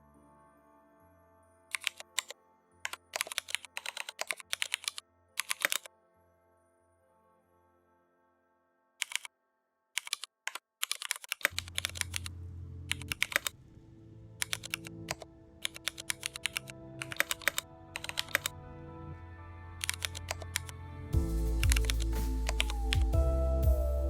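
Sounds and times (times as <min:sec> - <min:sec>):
soft background music: 0:00.0 - 0:09.3, 0:11.5 - 0:24.0
typing on computer keyboard: 0:01.7 - 0:02.3, 0:02.9 - 0:05.9, 0:09.0 - 0:09.3, 0:10.0 - 0:12.3, 0:12.9 - 0:13.5, 0:14.4 - 0:18.6, 0:19.8 - 0:20.7.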